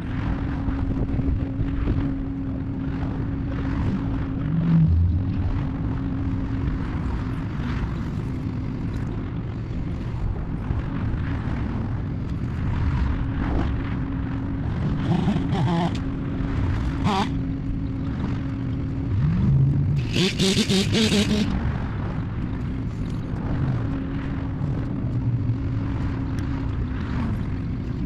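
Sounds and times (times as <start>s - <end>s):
engine running with low rumble: 0.0s - 28.0s
higher wavering sounds: 19.1s - 21.6s.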